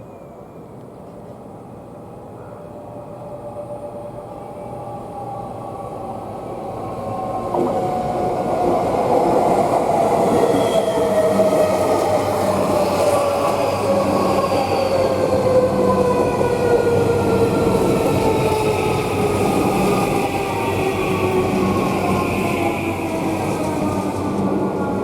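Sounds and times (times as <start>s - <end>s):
electric train approaching: 3.1s - 25.0s.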